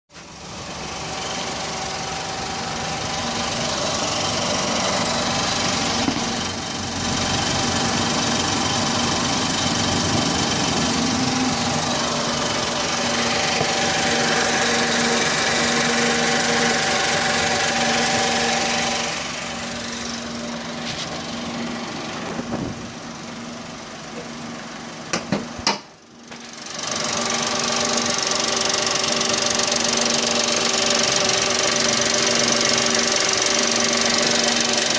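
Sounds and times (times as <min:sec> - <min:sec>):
car engine running: 0:00.1 - 0:34.9.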